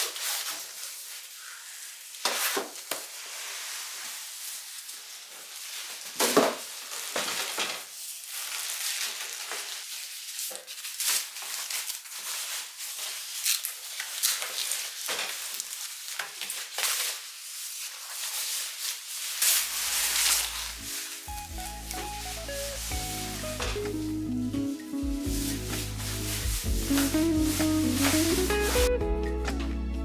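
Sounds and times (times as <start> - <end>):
crackling hiss: 19.4 - 28.9
background music: 20.8 - 30.0
stirring and scraping: 25.2 - 28.9.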